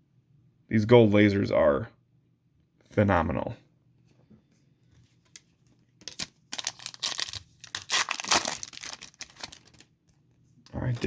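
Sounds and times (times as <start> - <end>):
foil wrapper crinkling: 6.0 - 9.9.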